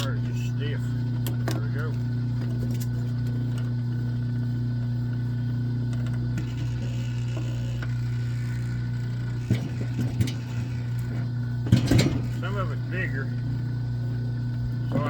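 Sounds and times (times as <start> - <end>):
motor humming: 0.0 - 15.0
copper cable knocks and rattles: 9.3 - 12.4.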